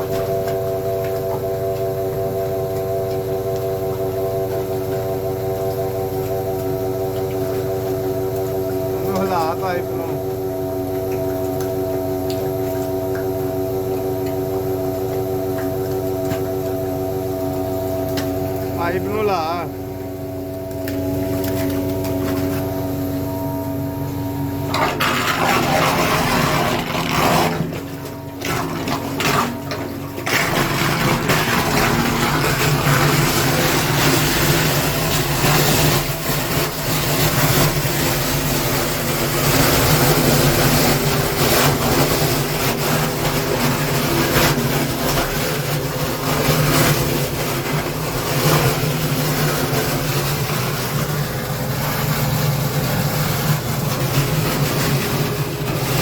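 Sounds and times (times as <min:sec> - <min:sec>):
truck engine running: 0:00.0 - 0:32.9.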